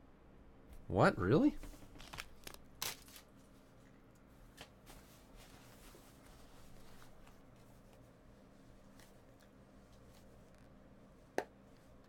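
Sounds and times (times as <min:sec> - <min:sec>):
trading cards being sorted: 0:01.6 - 0:03.4.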